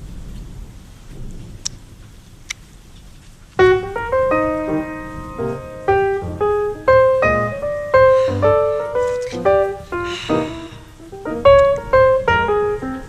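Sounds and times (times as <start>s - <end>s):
rain hissing: 0.0s - 13.0s
solo piano music: 3.6s - 13.0s.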